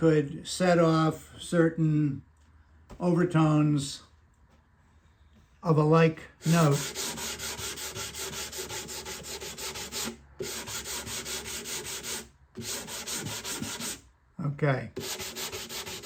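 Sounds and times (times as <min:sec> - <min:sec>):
sandpaper rubbing on wood: 0:06.4 - 0:14.0, 0:15.0 - 0:16.0.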